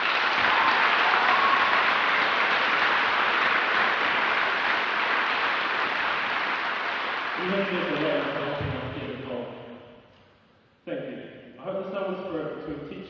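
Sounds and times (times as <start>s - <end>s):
crowd applauding: 0.0s - 8.6s.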